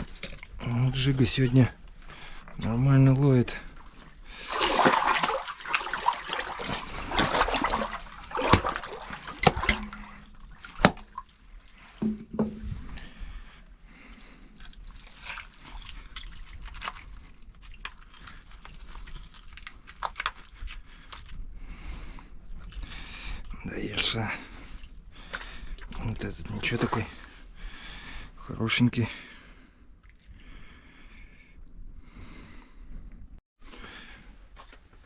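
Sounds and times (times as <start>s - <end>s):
water sloshing and dripping: 0.0s - 21.4s, 24.0s - 28.1s.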